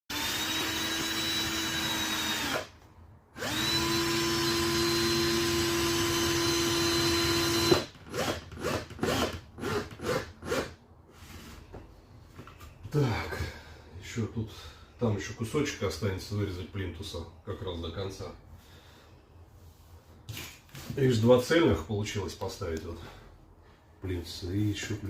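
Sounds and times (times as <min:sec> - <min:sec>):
power tool cutting wood: 0:00.1 - 0:02.7, 0:03.4 - 0:10.7.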